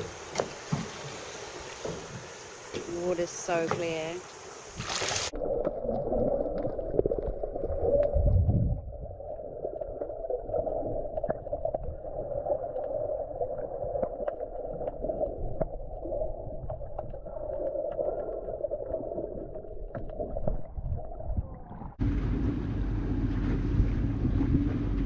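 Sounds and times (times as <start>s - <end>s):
underwater watery hiss: 0.0s - 5.3s
low rumble: 5.4s - 14.0s, 20.6s - 25.0s.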